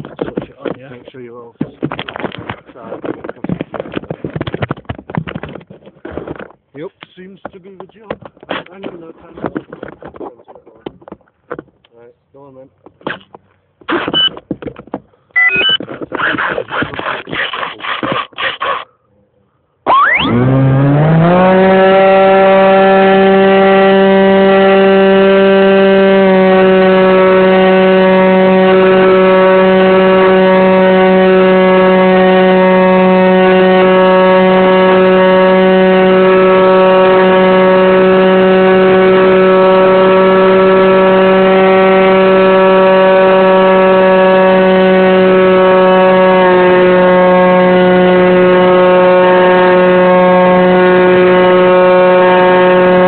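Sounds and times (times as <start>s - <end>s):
model plane motor whining: 16.1s - 18.9s, 19.9s - 53.0s.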